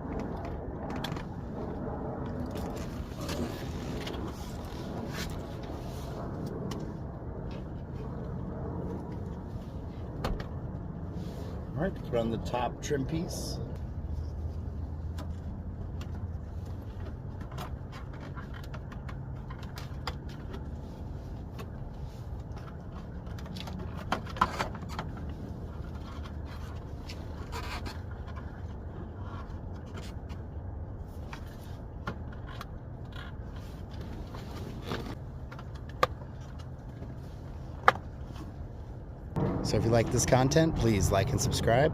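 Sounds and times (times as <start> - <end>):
steady low hum: 0.0 - 41.9.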